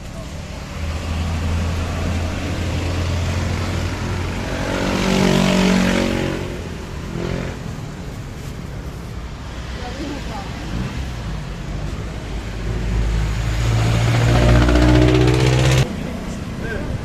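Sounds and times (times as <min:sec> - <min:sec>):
traffic rumble: 0:00.0 - 0:17.0
vehicle passing by: 0:09.5 - 0:16.3.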